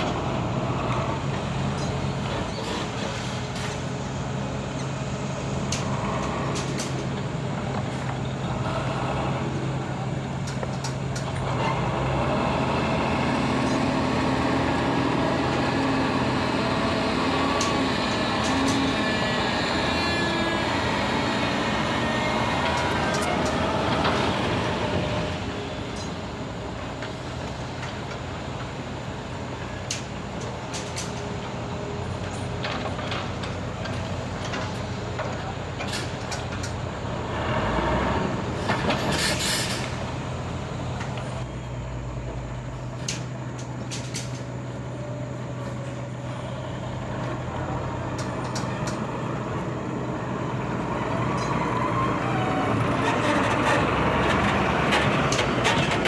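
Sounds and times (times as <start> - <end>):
heavy diesel machinery running: 0.0 - 56.0
air brake hiss: 38.6 - 40.1.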